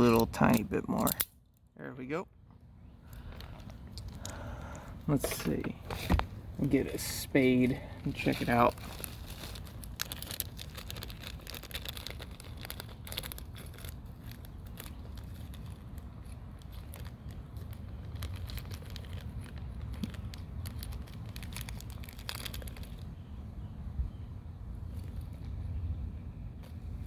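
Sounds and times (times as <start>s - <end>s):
small metal clicks: 0.1s - 1.7s
plastic packaging crinkling: 6.5s - 23.4s.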